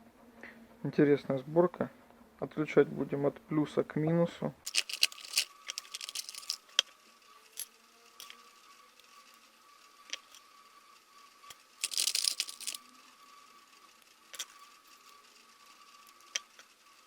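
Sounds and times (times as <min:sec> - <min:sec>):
faint steady whine: 0:04.4 - 0:17.0
metallic clicks and rattles: 0:04.7 - 0:06.9, 0:11.8 - 0:12.8, 0:14.4 - 0:14.6.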